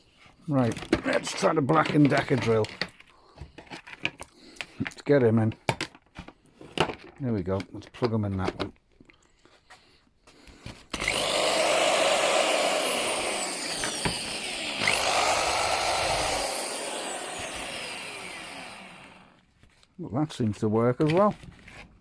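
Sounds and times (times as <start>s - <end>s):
electric drill motor whining: 10.9s - 19.4s.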